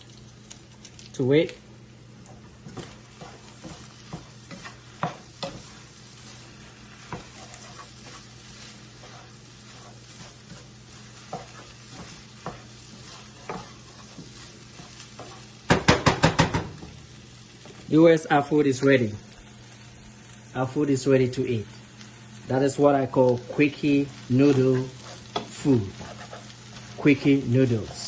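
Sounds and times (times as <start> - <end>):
noodles sizzling in a pan: 0.0 - 28.0
utensil scraping and tapping pan: 2.6 - 5.8, 9.0 - 16.7.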